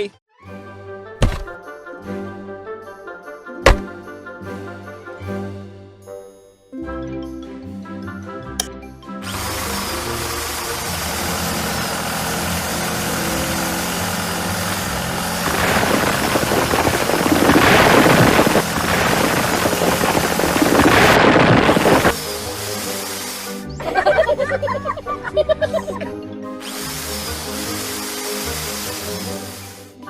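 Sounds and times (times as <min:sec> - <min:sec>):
machine engine running: 0:09.2 - 0:24.0, 0:26.6 - 0:30.0.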